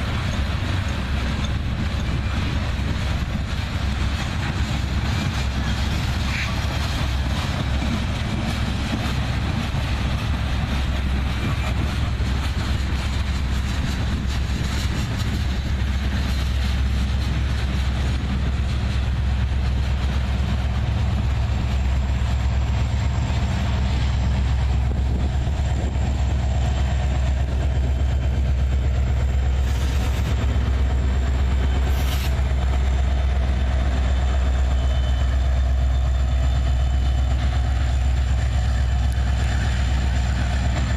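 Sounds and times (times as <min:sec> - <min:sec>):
locomotive engine rumble: 0:00.0 - 0:40.9
train wheels rolling on rails: 0:00.0 - 0:40.9.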